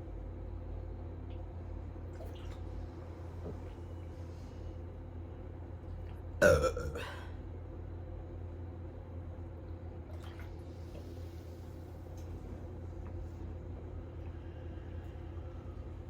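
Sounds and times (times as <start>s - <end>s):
loud burp: 6.4s - 7.3s.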